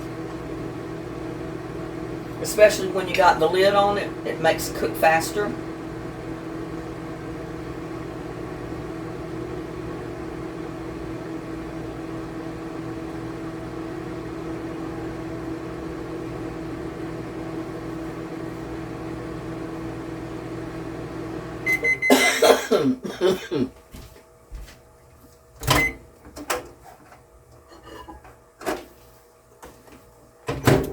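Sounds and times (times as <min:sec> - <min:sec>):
microwave oven humming: 0:00.0 - 0:30.9
microwave beep: 0:21.6 - 0:22.4, 0:25.6 - 0:26.1
microwave door clattering open: 0:30.5 - 0:30.9.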